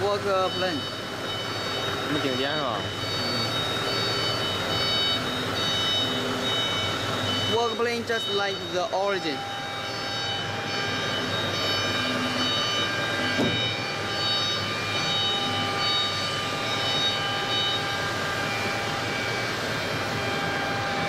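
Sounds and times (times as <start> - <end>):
mechanical hum: 0.0 - 21.0
stepper motors whining: 0.0 - 21.0.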